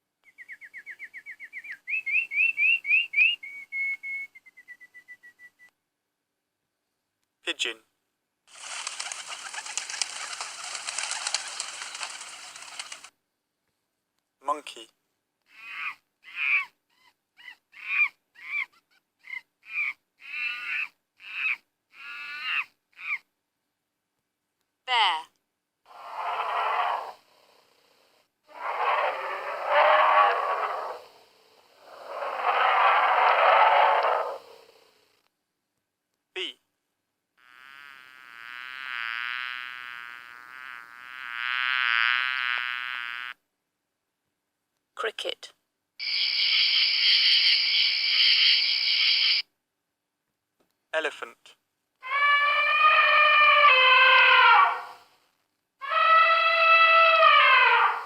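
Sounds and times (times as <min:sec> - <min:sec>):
bee buzzing: 0:08.6 - 0:13.1, 0:37.4 - 0:43.4, 0:46.0 - 0:49.4
monkey screeching calls: 0:08.6 - 0:13.1, 0:15.5 - 0:16.7, 0:17.4 - 0:23.2, 0:28.5 - 0:31.1, 0:31.8 - 0:34.5, 0:52.0 - 0:55.0, 0:55.8 - 0:58.0.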